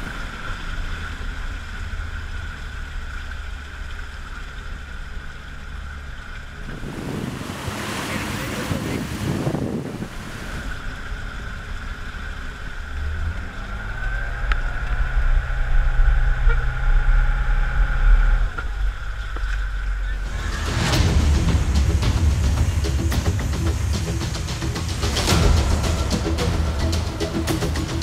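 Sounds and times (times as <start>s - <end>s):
large engine running: 0.0s - 28.0s.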